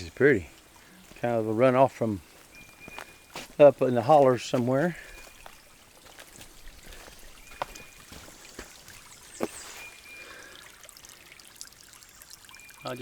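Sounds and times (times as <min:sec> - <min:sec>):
stream trickling over rocks: 0:00.0 - 0:13.0
water splashes: 0:00.0 - 0:13.0.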